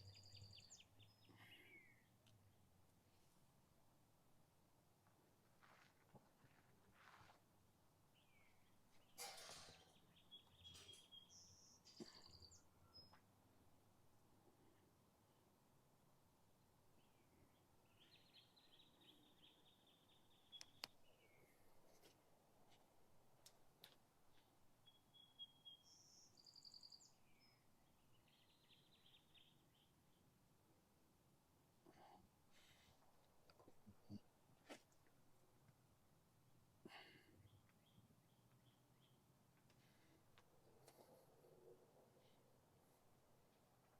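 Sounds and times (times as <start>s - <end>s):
faint bird chirps: 0.0s - 2.2s, 8.2s - 13.2s, 17.0s - 21.7s, 24.8s - 30.3s.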